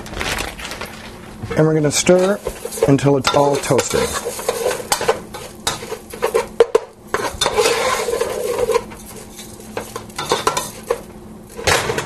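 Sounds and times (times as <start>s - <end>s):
sizzling: 1.9s - 12.0s
spoon scraping a pot: 2.1s - 11.0s.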